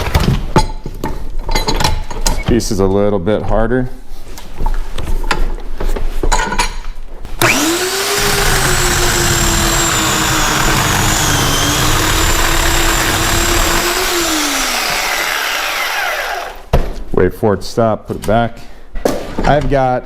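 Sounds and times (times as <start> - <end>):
electric chainsaw cutting wood: 7.4 - 16.7.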